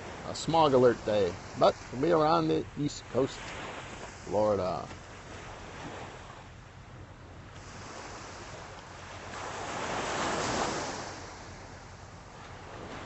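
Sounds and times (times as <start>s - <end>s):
waves breaking on beach: 0.0s - 13.0s.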